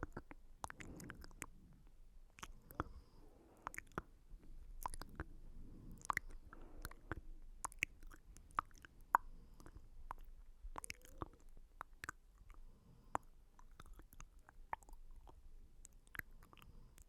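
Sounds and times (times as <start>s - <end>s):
wet mouth clicks and smacks: 0.0s - 3.0s, 3.6s - 17.0s
soft squishy mouth noises: 0.0s - 17.0s.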